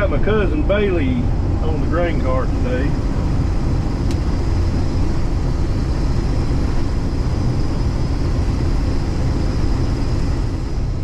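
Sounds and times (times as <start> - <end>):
combine harvester rumbling: 0.0 - 11.0
faint high whine: 0.0 - 11.0.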